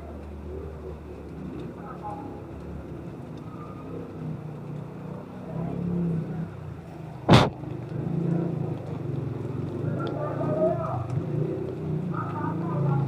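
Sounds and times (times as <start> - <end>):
vehicle engines rumbling: 0.0 - 13.0
short loud bang: 7.3 - 7.6.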